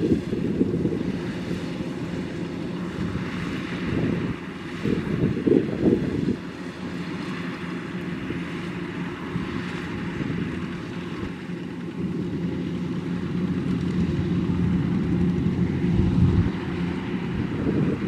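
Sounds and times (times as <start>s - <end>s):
combine harvester running: 0.0s - 18.0s.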